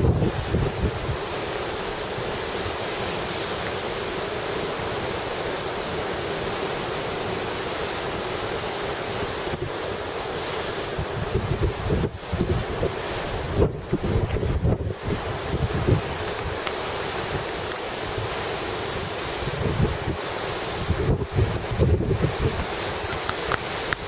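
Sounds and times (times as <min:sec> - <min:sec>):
wind buffeting microphone: 0:00.0 - 0:02.9, 0:10.8 - 0:24.0
breaking waves: 0:00.0 - 0:24.0.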